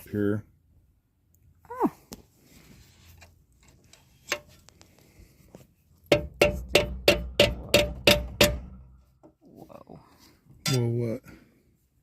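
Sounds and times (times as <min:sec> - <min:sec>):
hammer striking metal: 0:06.1 - 0:08.8.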